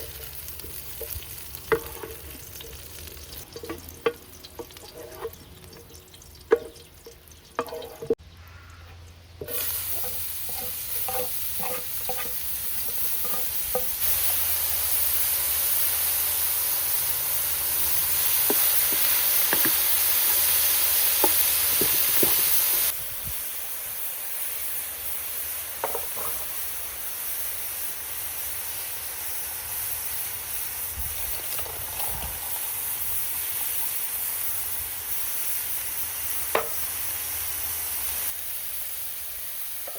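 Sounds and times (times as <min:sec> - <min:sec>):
food sizzling in hot oil: 0:00.0 - 0:08.2, 0:09.4 - 0:39.9
metal utensil clinking on pan: 0:06.5 - 0:08.2, 0:09.4 - 0:14.0.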